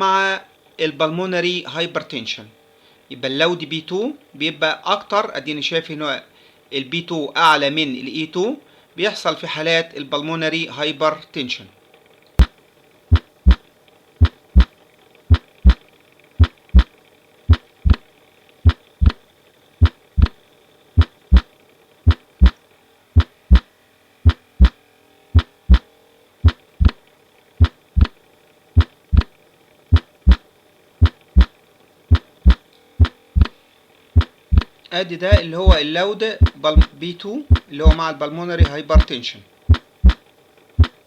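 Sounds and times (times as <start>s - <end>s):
heartbeat lub-dub thuds: 13.1s - 13.6s, 14.2s - 14.7s, 15.3s - 15.8s, 16.4s - 16.9s, 17.5s - 18.0s, 18.6s - 19.2s, 19.8s - 20.4s, 21.0s - 21.5s, 22.1s - 22.6s, 23.2s - 23.6s, 24.2s - 24.8s, 25.4s - 25.8s, 26.4s - 27.0s, 27.6s - 28.2s, 28.8s - 29.3s, 29.9s - 30.4s, 31.0s - 31.5s, 32.1s - 33.6s, 34.2s - 35.8s, 36.4s - 38.0s, 38.6s - 39.1s, 39.7s - 40.2s, 40.8s - 41.0s.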